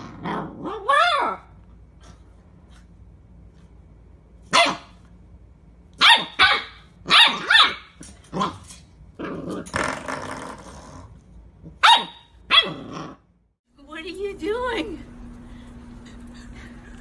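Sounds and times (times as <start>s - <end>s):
dog barking: 4.5s - 5.0s, 6.0s - 8.5s, 11.8s - 12.8s.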